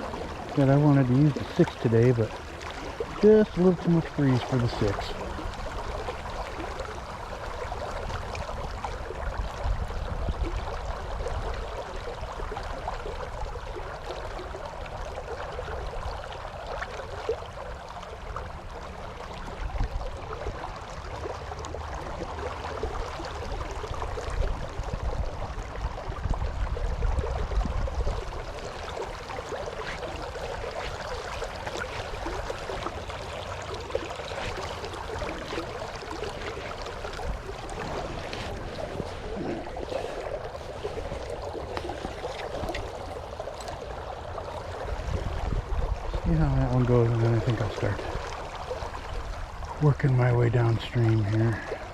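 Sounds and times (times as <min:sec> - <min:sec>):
river water rushing: 0:00.0 - 0:09.2, 0:28.5 - 0:45.4
wind buffeting microphone: 0:00.0 - 0:11.8, 0:24.0 - 0:49.8.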